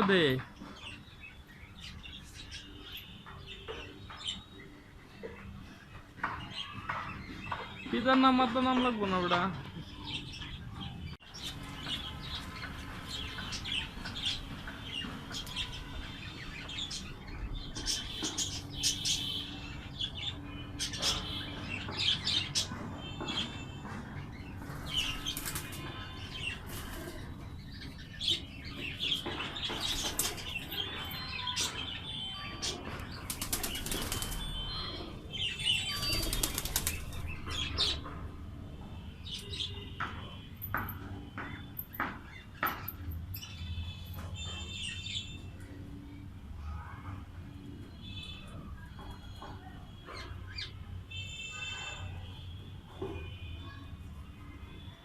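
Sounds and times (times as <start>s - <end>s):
birds flapping wings: 24.7s - 25.8s, 33.2s - 34.6s, 35.9s - 37.4s.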